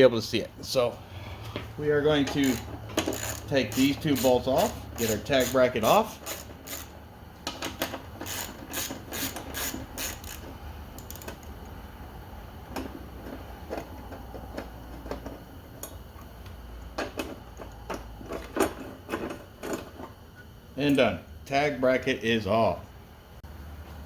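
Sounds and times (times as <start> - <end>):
low steady hum: 0.0 - 24.0
hand ratchet clicking: 2.2 - 11.6.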